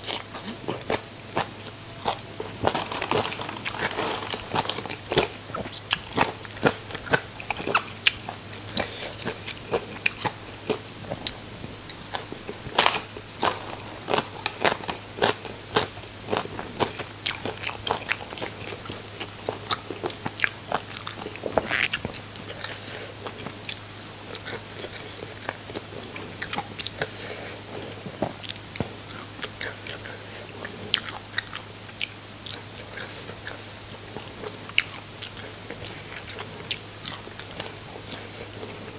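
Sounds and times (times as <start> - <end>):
crunching crispy fried food: 0.0 - 30.2.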